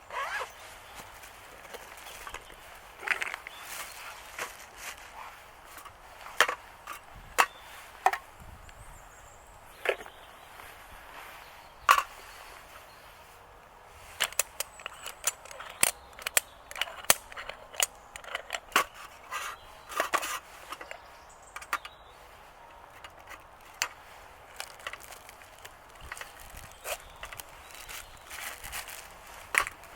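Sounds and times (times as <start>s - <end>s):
dry wood cracking and snapping: 14.2s - 19.0s, 23.0s - 29.9s.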